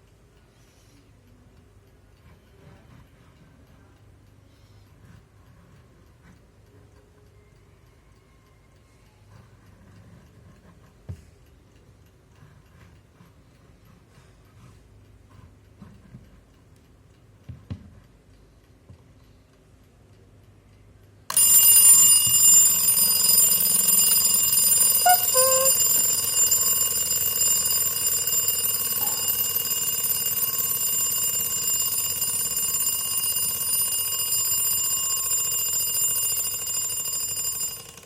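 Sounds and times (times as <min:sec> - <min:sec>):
alarm clock bell ringing: 0:21.3 - 0:38.0.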